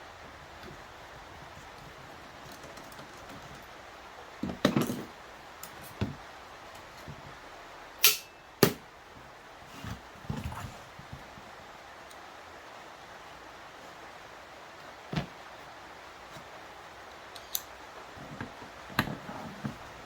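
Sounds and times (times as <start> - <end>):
steady hiss: 0.0 - 20.0
loud sharp clicks: 8.0 - 8.8.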